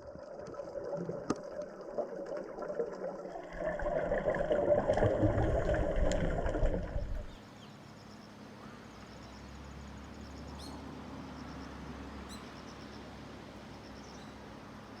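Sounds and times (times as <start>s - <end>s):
underwater exhaled bubbles: 0.0s - 7.4s.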